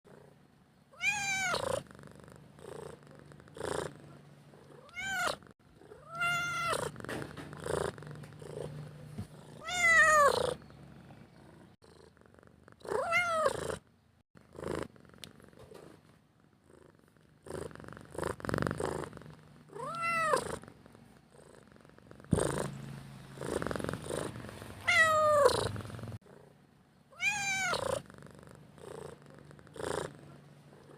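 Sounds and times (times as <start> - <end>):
cat meowing: 0.9 - 1.8, 4.8 - 6.9, 9.6 - 10.6, 12.9 - 13.7, 19.7 - 20.5, 24.8 - 25.8, 27.1 - 28.0
cat purring: 1.3 - 26.7, 27.5 - 30.9.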